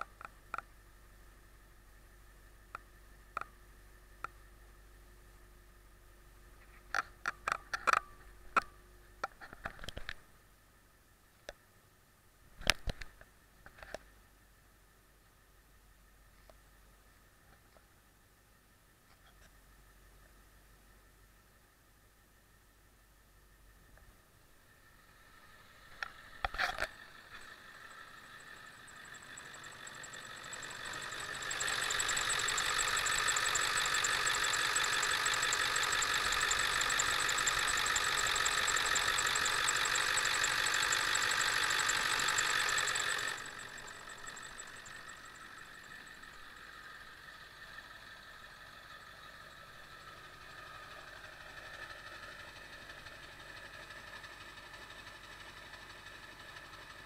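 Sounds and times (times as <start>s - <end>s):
sharp click: 12.6s - 14.0s
diesel engine running: 22.9s - 57.0s.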